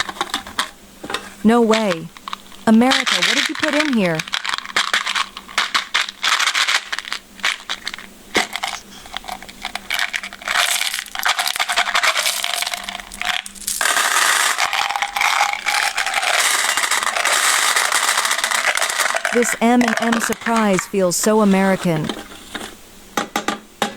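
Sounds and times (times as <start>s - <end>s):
dense crackling: 10.0s - 22.0s.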